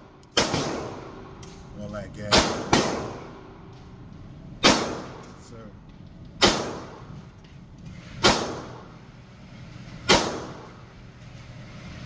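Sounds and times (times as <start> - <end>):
gunshots with echoing tail: 0.4 - 1.3, 2.3 - 3.6, 4.6 - 5.3, 6.4 - 7.1, 8.2 - 8.9, 10.1 - 10.8.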